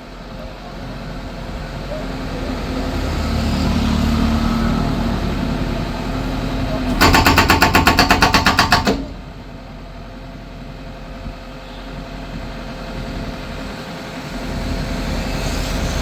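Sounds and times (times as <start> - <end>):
engine running steadily: 0.0 - 16.0
concrete breaker hammering: 6.8 - 9.4.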